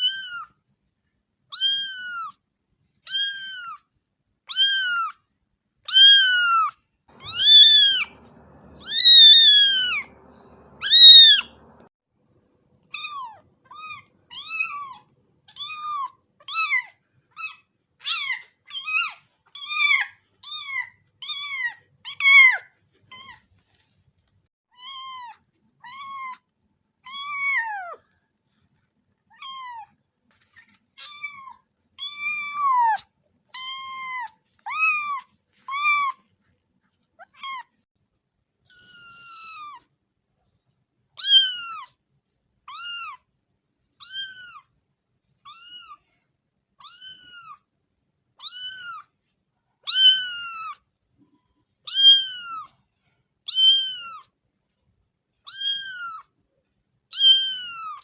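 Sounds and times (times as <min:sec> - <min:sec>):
cat meowing: 0:00.0 - 0:00.5, 0:01.5 - 0:02.4, 0:03.1 - 0:03.8, 0:04.5 - 0:05.2, 0:05.9 - 0:11.9, 0:12.9 - 0:23.4, 0:24.8 - 0:26.4, 0:27.1 - 0:28.0, 0:29.3 - 0:29.9, 0:31.0 - 0:36.2, 0:37.2 - 0:37.7, 0:38.7 - 0:39.9, 0:41.2 - 0:41.9, 0:42.7 - 0:43.2, 0:44.0 - 0:44.7, 0:45.5 - 0:46.0, 0:46.8 - 0:47.6, 0:48.4 - 0:49.1, 0:49.8 - 0:50.8, 0:51.9 - 0:52.7, 0:53.5 - 0:54.3, 0:55.5 - 0:56.3, 0:57.1 - 0:58.0.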